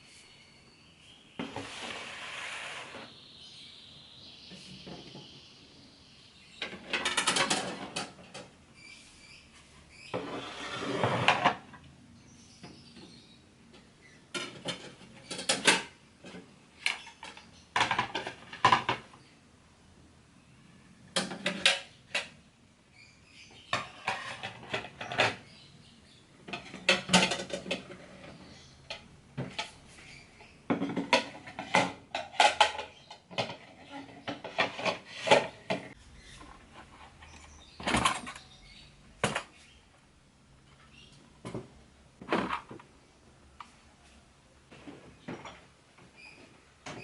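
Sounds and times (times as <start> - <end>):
dishes clattering and clinking: 6.6 - 8.6, 13.8 - 19.1, 21.1 - 22.4, 23.7 - 25.6, 26.4 - 29.8, 30.6 - 38.6, 39.2 - 39.6.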